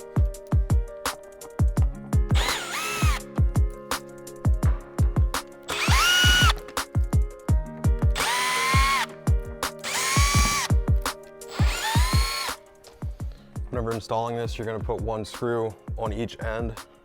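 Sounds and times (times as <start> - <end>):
background music with kick drum: 0.0 - 17.0
power driver whining: 2.4 - 3.2, 5.7 - 6.6, 8.2 - 9.1, 9.8 - 10.7, 11.5 - 12.5.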